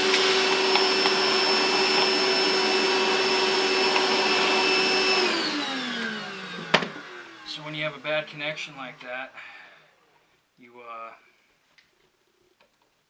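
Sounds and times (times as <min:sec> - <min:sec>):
electric motor whining: 0:00.0 - 0:08.0.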